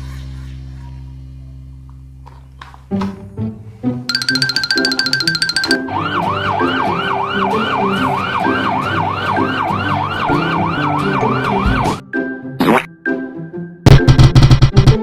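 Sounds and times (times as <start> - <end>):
light background music: 0.1 - 15.0
toy siren wailing: 4.1 - 11.8.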